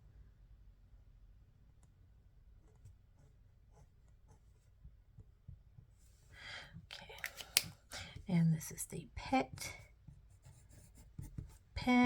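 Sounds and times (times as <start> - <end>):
pen tapping and scratching paper: 9.5 - 11.6.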